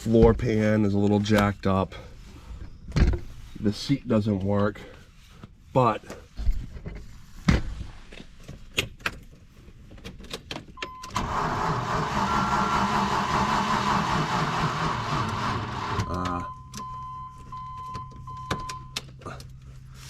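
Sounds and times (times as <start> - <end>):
car engine starting and running: 10.8 - 20.0.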